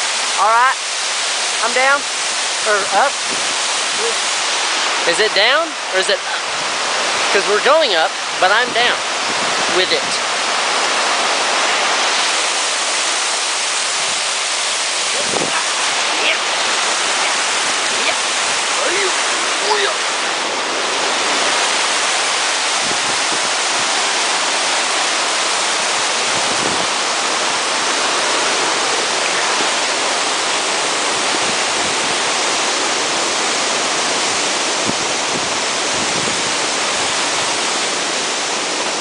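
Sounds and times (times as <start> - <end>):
waterfall roaring: 0.0 - 39.0.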